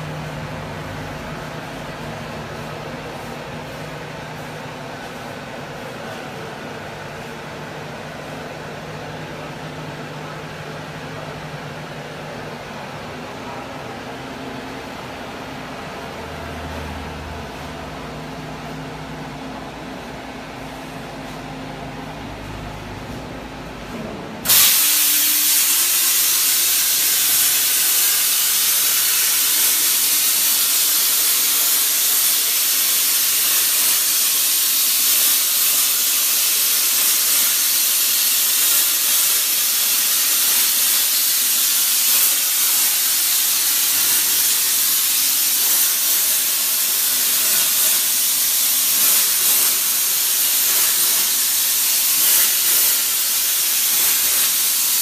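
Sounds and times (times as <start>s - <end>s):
plasma cutter torch hissing: 24.4s - 55.0s.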